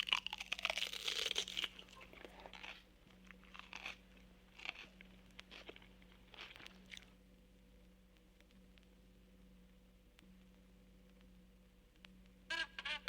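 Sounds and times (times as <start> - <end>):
crackling crunch: 0.0 - 9.0.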